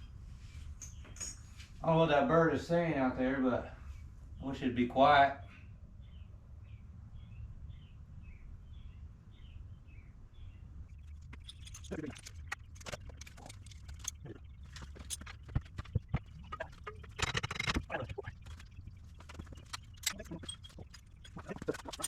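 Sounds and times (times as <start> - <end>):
bird chirping: 5.4 - 22.0
clicks and knocks of handling: 11.1 - 22.0.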